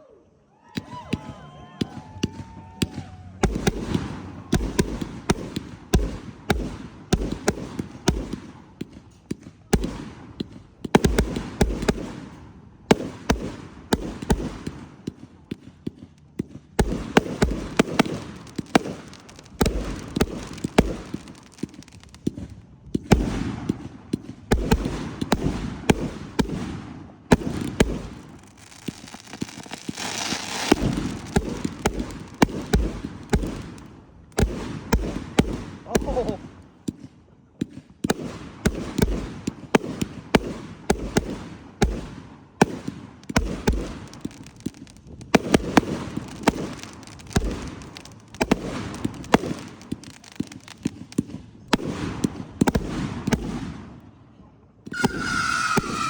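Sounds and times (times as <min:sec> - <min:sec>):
fireworks cracks and booms: 0:00.6 - 0:54.2, 0:54.8 - 0:56.0.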